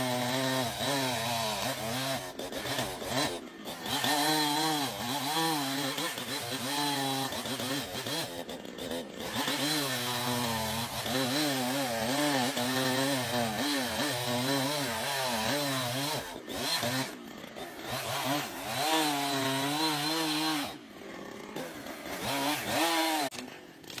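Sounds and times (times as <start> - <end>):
chainsaw cutting wood: 0.0 - 24.0.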